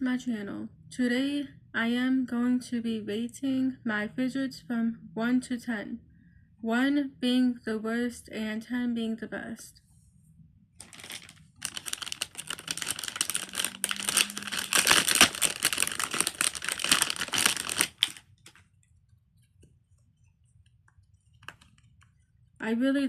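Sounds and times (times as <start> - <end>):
crinkly plastic rustling: 10.8 - 18.8, 21.1 - 22.4.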